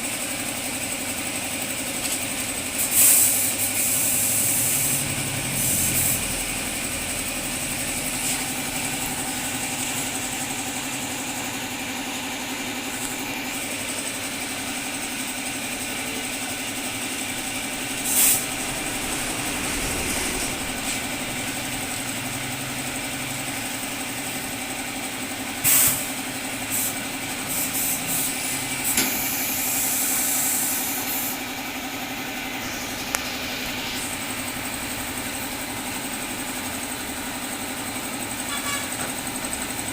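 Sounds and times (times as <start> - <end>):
short hissing bursts: 2.8 - 4.9, 18.0 - 18.5
motor hum: 4.4 - 24.8.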